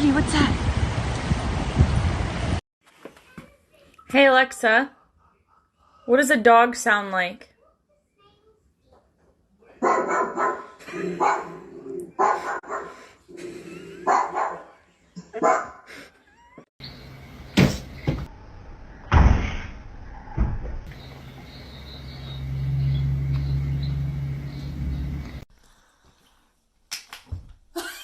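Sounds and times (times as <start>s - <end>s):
dog barking: 9.8s - 13.0s, 14.0s - 14.8s, 15.4s - 15.9s
sharp thumps: 17.5s - 18.3s.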